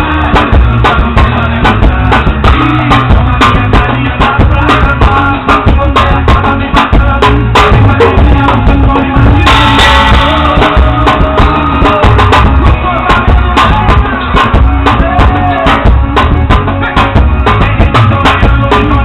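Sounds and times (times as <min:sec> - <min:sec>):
backing song: 0:00.0 - 0:19.0
drum kit hits: 0:00.0 - 0:19.0
cymbal crash: 0:09.5 - 0:10.7.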